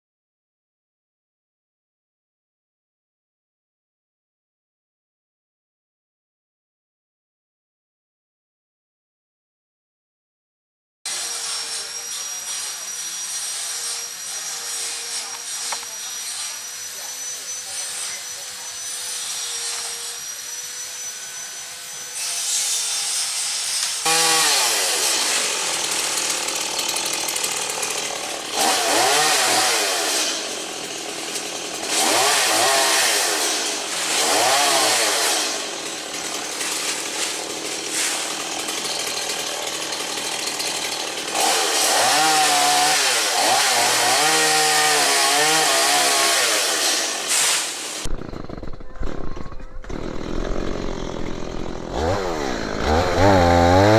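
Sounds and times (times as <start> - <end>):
chainsaw revving cutting wood: 11.1 - 53.9.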